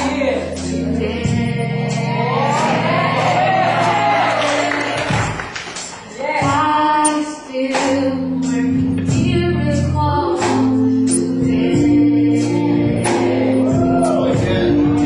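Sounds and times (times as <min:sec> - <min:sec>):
bass line: 0:00.0 - 0:04.4, 0:07.9 - 0:15.0
gospel singing: 0:00.0 - 0:15.0.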